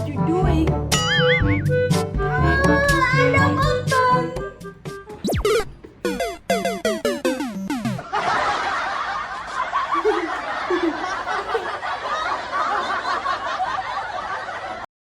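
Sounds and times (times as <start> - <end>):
falling cartoon tones: 1.0 - 1.7, 5.2 - 8.0
canned snickering and chuckling: 7.8 - 13.4.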